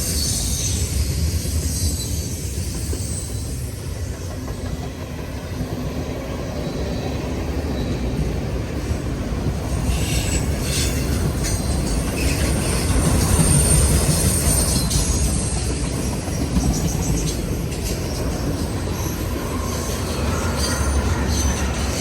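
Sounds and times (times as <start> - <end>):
wheel squeal: 0.0 - 4.1, 9.8 - 22.0
freight train rumble: 0.0 - 22.0.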